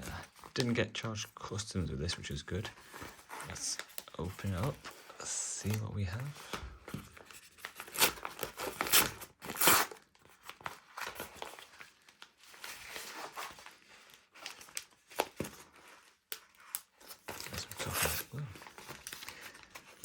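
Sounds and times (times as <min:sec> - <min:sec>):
packaging tearing and crinkling: 0:07.6 - 0:20.0.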